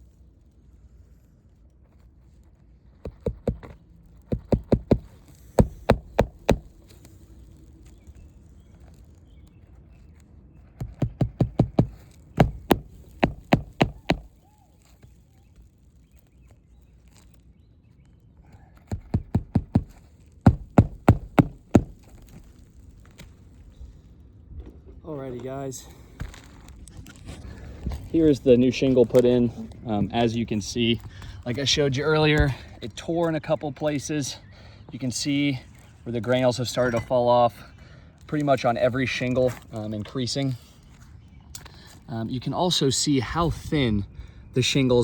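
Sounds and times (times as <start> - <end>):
hammer striking nails: 3.1 - 3.7, 4.3 - 6.8, 10.8 - 14.3, 18.9 - 22.2.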